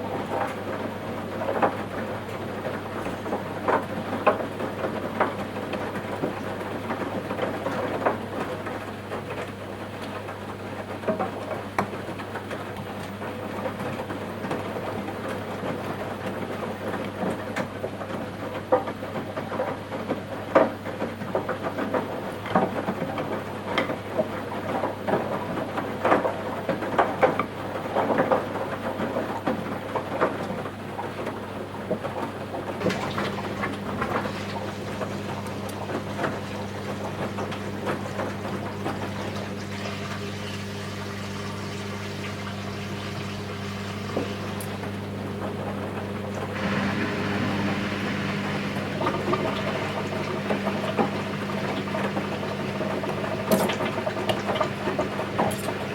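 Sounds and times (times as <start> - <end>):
laundry and water tumbling: 0.0 - 55.9
washing machine motor hum: 31.4 - 55.9.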